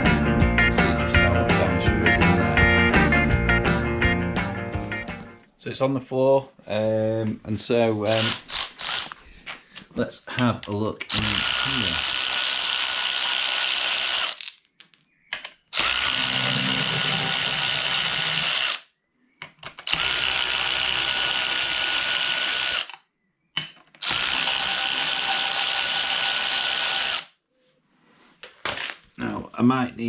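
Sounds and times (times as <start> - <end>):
electric drill whining: 8.1 - 9.2, 11.1 - 14.4, 15.7 - 18.9, 19.8 - 23.0, 24.0 - 27.3.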